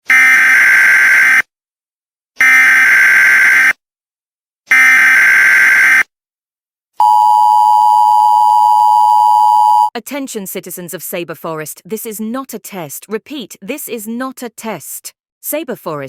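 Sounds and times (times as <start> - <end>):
two-tone attention signal: 7.0 - 9.9.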